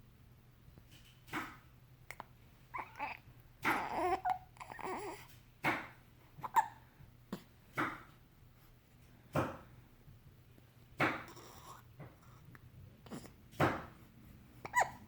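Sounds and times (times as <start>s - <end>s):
baby whimpering: 2.7s - 5.3s, 11.3s - 11.9s, 14.6s - 15.0s
baby hiccuping: 2.8s - 5.2s, 6.4s - 7.5s, 14.6s - 15.0s.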